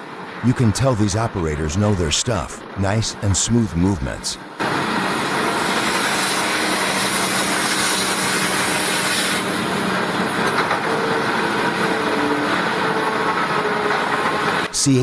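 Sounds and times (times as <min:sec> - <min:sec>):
heavy diesel engines humming: 0:00.0 - 0:15.0.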